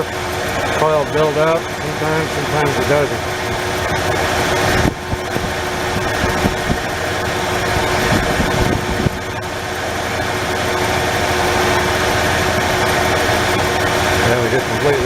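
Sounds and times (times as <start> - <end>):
engine idling with misfire: 0.0 - 15.0.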